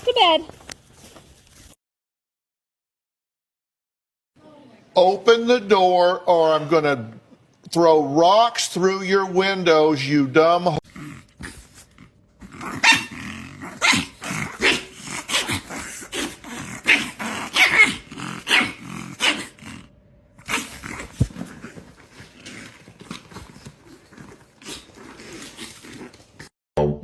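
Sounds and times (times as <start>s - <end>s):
dog growling: 10.8s - 26.5s.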